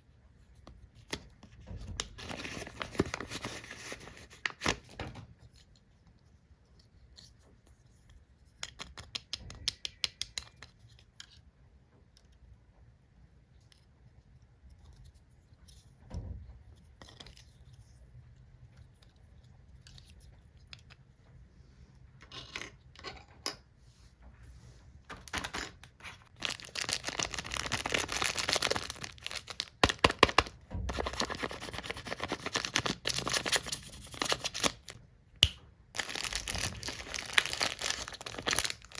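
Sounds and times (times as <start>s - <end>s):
plastic crinkling and tearing: 26.2s - 35.0s, 35.9s - 38.9s.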